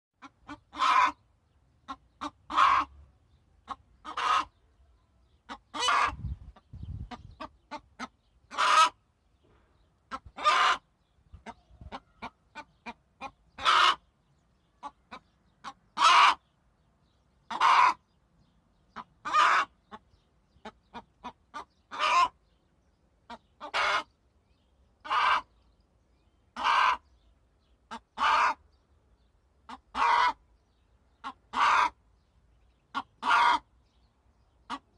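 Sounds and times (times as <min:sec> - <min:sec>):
hen calling loudly: 0:00.2 - 0:01.2, 0:01.9 - 0:03.0, 0:04.0 - 0:04.6, 0:05.5 - 0:09.0, 0:10.1 - 0:14.1, 0:14.8 - 0:16.4, 0:17.5 - 0:18.0, 0:19.0 - 0:20.0, 0:20.6 - 0:22.4, 0:23.3 - 0:24.1, 0:25.0 - 0:25.5, 0:26.6 - 0:27.0, 0:27.9 - 0:28.6, 0:29.7 - 0:30.4, 0:31.2 - 0:32.0, 0:32.9 - 0:33.7
soft hen clucks: 0:00.2 - 0:09.1, 0:09.8 - 0:16.6, 0:17.3 - 0:22.6, 0:23.2 - 0:24.2, 0:25.0 - 0:25.6, 0:26.5 - 0:27.2, 0:27.8 - 0:28.8, 0:29.5 - 0:33.8, 0:34.5 - 0:34.9.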